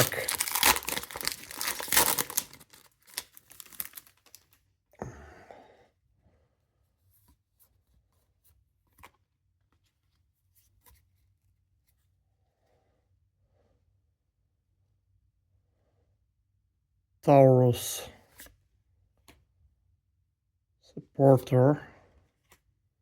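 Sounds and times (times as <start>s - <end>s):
foil pack crinkling and tearing: 0.0s - 4.6s.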